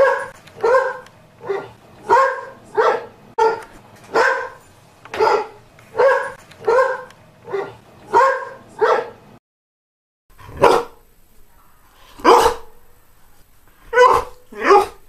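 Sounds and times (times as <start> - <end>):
dog barking: 0.0 - 9.2, 10.4 - 11.0, 12.2 - 12.8, 13.9 - 15.0.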